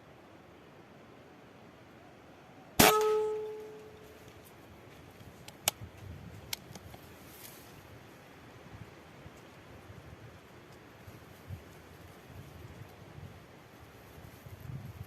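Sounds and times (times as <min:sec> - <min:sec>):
air rifle shot with metallic ring: 0:02.8 - 0:04.0
small sharp clicks: 0:06.5 - 0:07.1.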